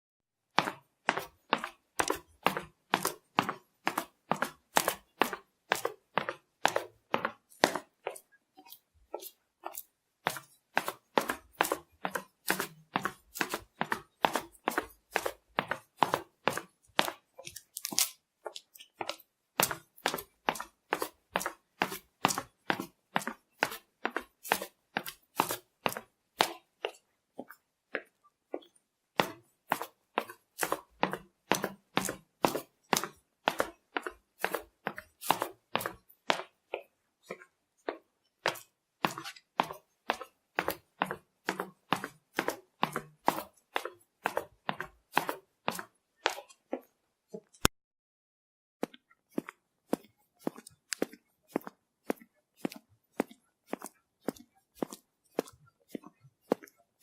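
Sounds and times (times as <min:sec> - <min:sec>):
quick sharp footsteps: 0:00.6 - 0:26.6, 0:29.2 - 0:47.7.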